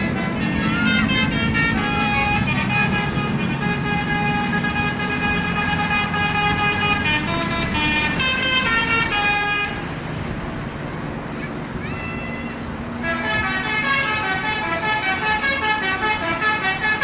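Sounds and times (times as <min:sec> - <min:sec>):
bus horn playing notes: 0:00.0 - 0:09.9, 0:13.0 - 0:17.0
engine and traffic rumble: 0:00.0 - 0:17.0.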